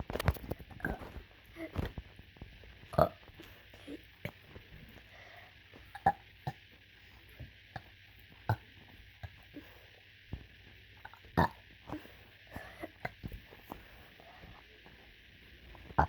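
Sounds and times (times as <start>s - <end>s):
faint steady hiss: 0.0s - 16.0s
person burping: 2.9s - 3.2s, 11.0s - 11.6s.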